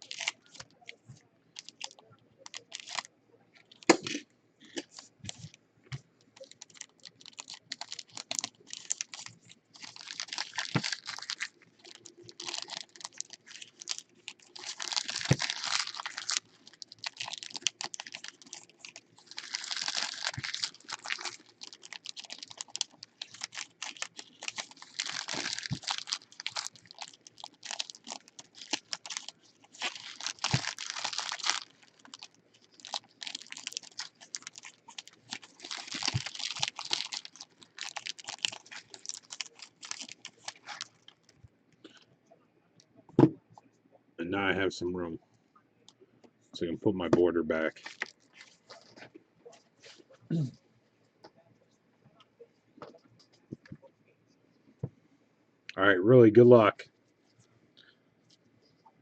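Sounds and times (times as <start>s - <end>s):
wrappers crinkling and tearing: 0.0s - 1.0s, 1.6s - 5.5s, 6.3s - 41.4s, 47.6s - 49.1s.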